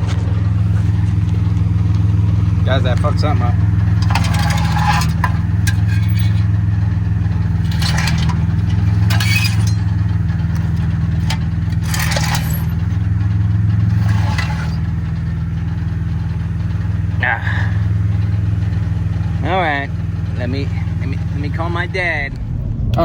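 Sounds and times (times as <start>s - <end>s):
scraping clinking noises: 0.0s - 17.0s
car engine humming: 0.0s - 23.0s.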